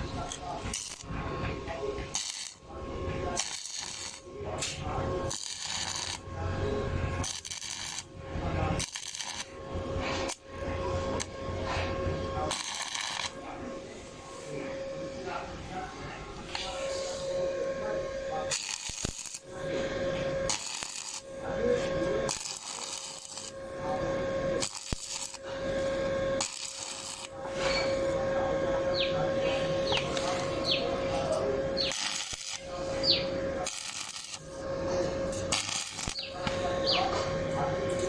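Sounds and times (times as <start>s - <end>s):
metal clinking and scraping: 18.5s - 28.2s.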